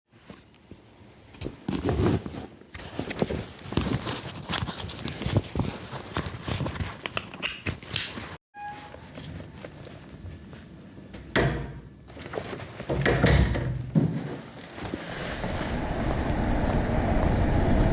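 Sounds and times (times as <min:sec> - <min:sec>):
rustling handling noise: 0:00.1 - 0:11.0, 0:12.1 - 0:13.0, 0:14.0 - 0:16.8
short beep: 0:08.6 - 0:09.0
footsteps: 0:14.9 - 0:17.9.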